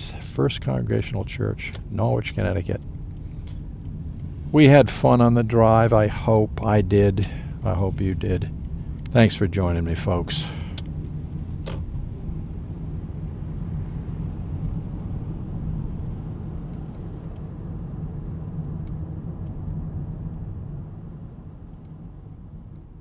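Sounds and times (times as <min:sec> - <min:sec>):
car engine rumble: 0:00.0 - 0:23.0
road noise: 0:00.0 - 0:23.0.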